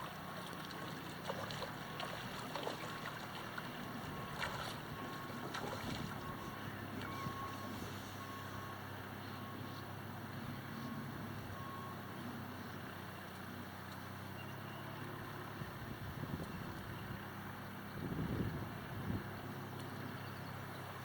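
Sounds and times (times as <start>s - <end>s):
low engine hum: 0.0s - 21.0s
faint repeating beep: 6.2s - 8.8s.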